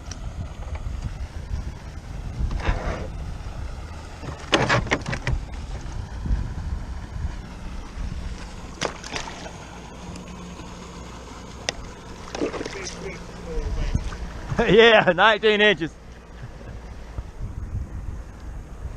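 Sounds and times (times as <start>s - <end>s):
wind buffeting microphone: 0.0s - 8.7s, 13.4s - 14.8s, 16.3s - 18.9s
clattering knocks in a boat: 4.2s - 5.5s.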